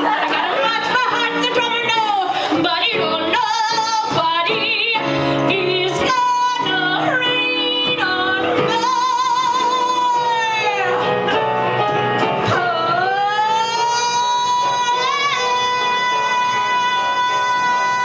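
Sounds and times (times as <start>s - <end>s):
woman belting a show tune: 0.0s - 11.5s
instrumental accompaniment: 0.0s - 18.0s.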